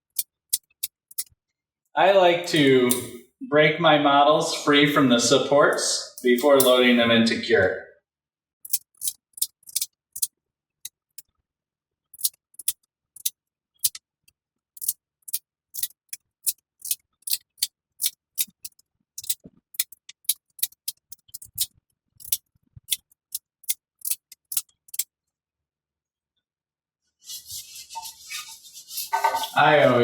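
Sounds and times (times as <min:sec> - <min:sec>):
resin supports snapping: 0:08.6 - 0:11.3, 0:12.2 - 0:14.0, 0:14.8 - 0:25.1.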